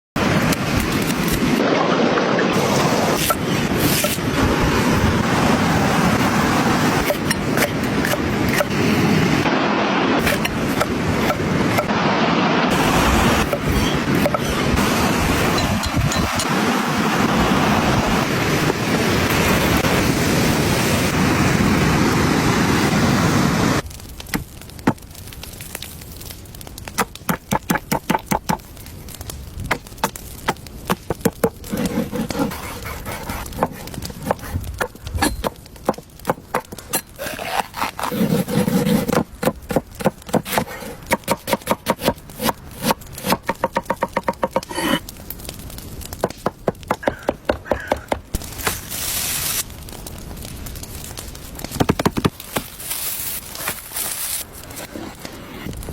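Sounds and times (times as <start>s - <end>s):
loud rushing wind-like noise: 0.2s - 23.8s.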